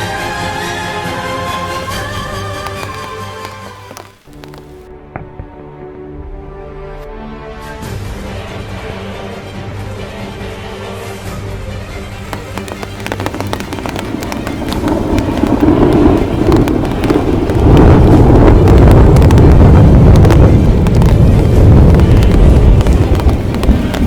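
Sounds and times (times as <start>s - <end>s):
hailstones clattering on hard surfaces: 1.6s - 4.9s, 12.2s - 24.0s
wind and downpour rumble: 1.6s - 4.9s, 12.2s - 24.0s.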